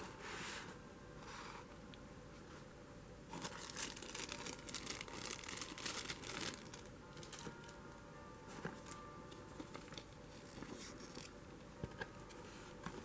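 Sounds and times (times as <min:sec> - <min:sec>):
crinkling and rustling: 0:03.3 - 0:07.8, 0:08.4 - 0:13.0.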